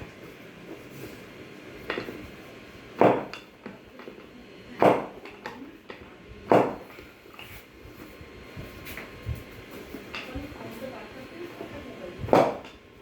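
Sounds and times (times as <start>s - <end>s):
sharp knocks: 3.0s - 3.3s.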